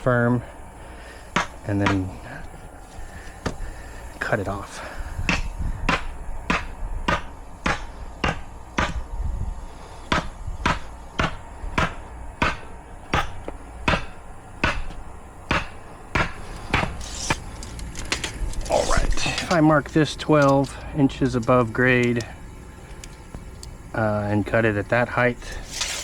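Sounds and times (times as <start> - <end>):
hammer driving wooden stake: 1.4 - 2.1, 5.3 - 9.0, 10.1 - 17.5.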